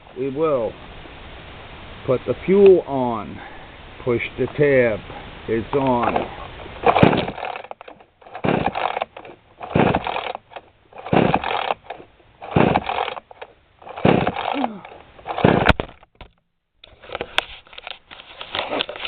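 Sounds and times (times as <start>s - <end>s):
chainsaw recoil rope pulls: 5.8s - 16.1s.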